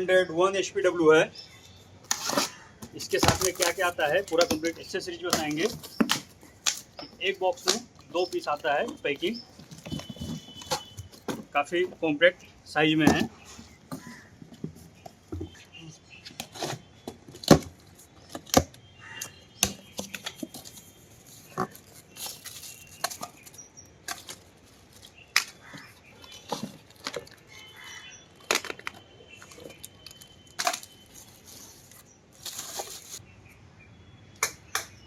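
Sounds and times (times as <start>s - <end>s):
packaging rustling: 2.1s - 12.0s, 19.8s - 33.2s
parts knocking and clicking: 2.8s - 12.1s.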